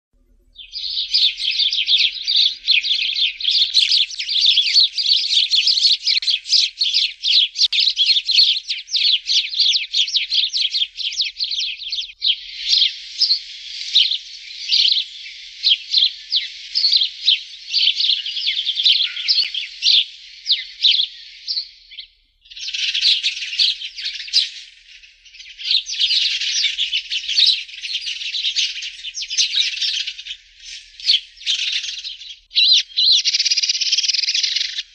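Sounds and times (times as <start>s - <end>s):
sparrows chirping: 0.2s - 34.9s.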